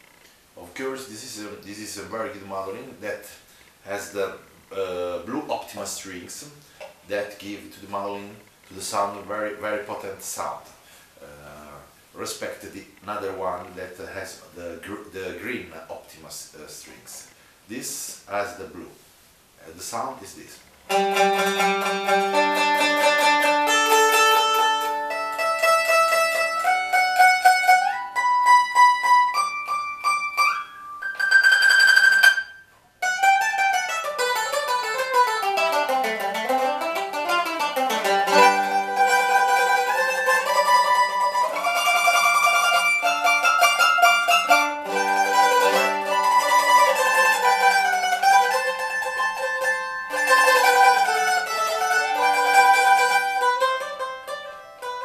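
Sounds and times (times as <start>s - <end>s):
mandolin picking runs: 20.9s - 55.0s.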